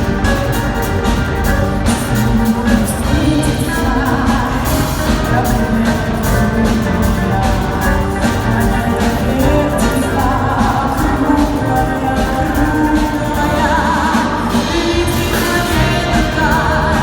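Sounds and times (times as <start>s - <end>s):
band playing a song: 0.0s - 17.0s
steady drum beat: 0.0s - 17.0s.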